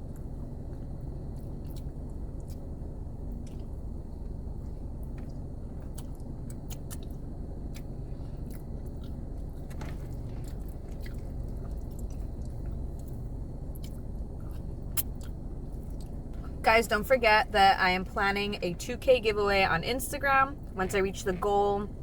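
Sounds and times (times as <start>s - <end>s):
chewing mouth clicks and smacks: 0.1s - 16.6s.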